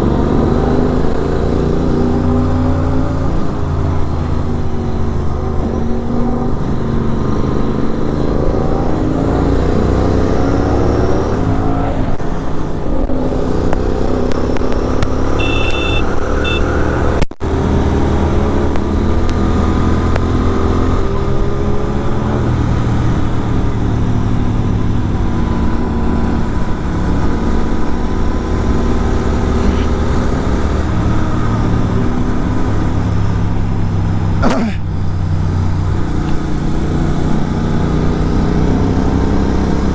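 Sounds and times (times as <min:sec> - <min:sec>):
motorcycle engine revving: 0:00.0 - 0:39.9
short high beeps: 0:15.4 - 0:16.7.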